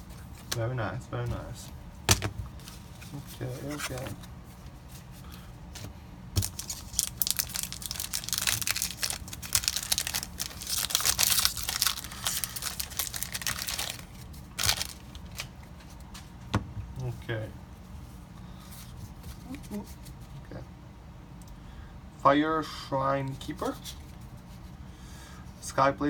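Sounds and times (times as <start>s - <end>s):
foil wrapper crinkling and tearing: 6.4s - 15.6s.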